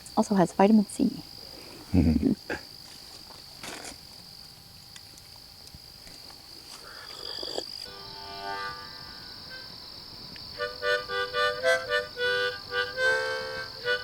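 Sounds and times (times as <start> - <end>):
crickets trilling: 0.0 - 14.0
background music with harmonica: 7.9 - 9.8, 10.5 - 14.0.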